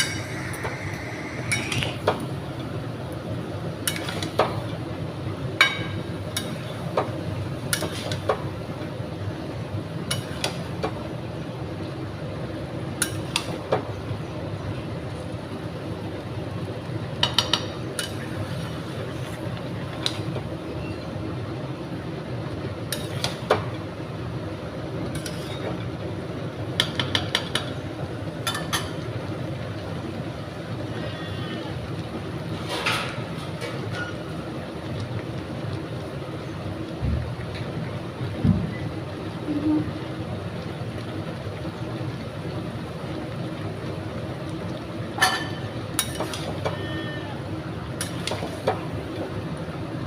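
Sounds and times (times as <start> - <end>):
curry sizzling in a pan: 0.0 - 50.0
metal utensil clinking on a pan: 45.2 - 46.5.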